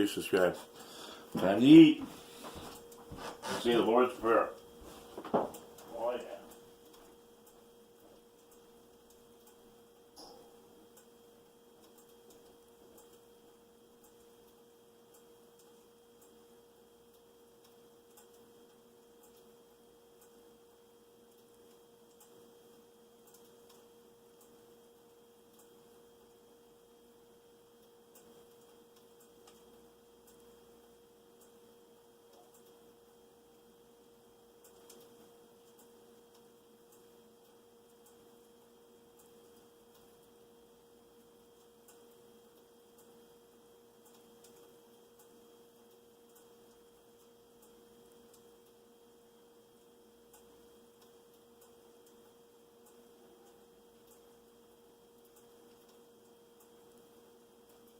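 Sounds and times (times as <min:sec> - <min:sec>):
faint steady hum: 0:00.0 - 0:57.9
faint ticks: 0:34.6 - 0:40.4, 0:44.0 - 0:48.8, 0:49.8 - 0:57.9.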